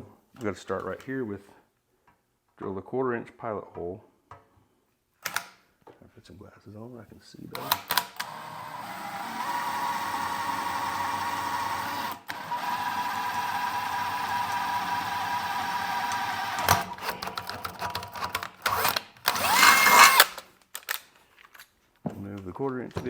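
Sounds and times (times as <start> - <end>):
electric drill whining: 7.6 - 20.5.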